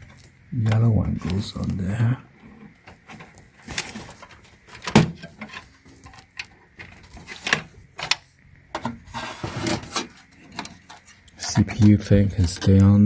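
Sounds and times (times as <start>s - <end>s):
clicks and knocks of computer parts: 2.8s - 11.1s.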